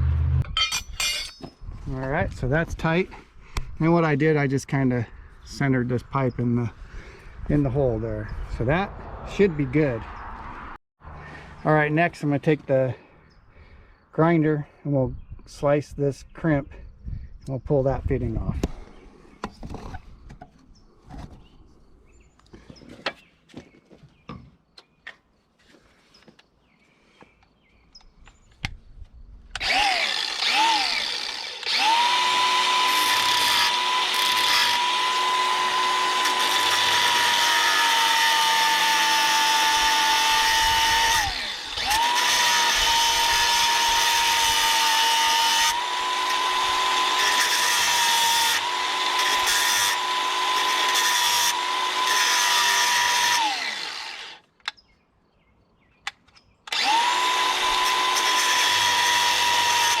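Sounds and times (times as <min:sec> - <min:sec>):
angle grinder cutting metal: 0:29.6 - 0:54.4, 0:56.7 - 1:00.0.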